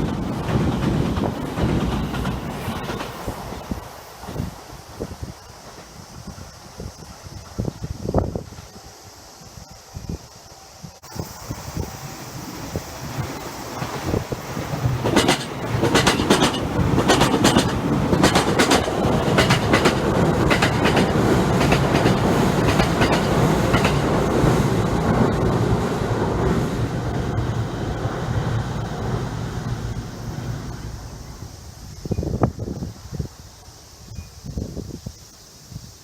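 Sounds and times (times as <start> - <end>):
train wheels clacking over rail joints: 0.0 - 4.6, 12.7 - 30.8
electric train rumble: 0.0 - 36.0.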